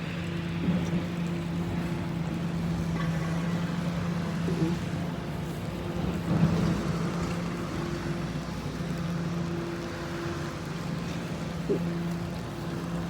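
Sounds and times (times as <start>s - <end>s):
engine running with low hum: 0.0s - 13.0s.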